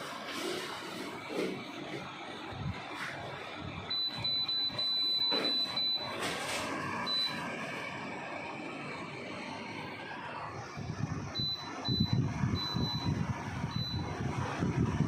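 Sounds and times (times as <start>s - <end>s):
high electronic beeping: 11.3s - 14.2s.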